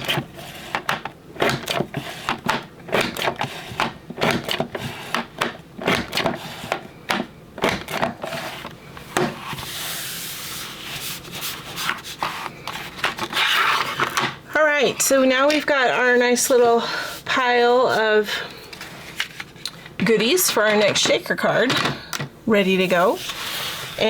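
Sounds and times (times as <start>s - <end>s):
paper punch clicks and knocks: 0.0s - 8.3s
paper rubbing and sliding: 9.3s - 14.2s, 22.8s - 24.0s.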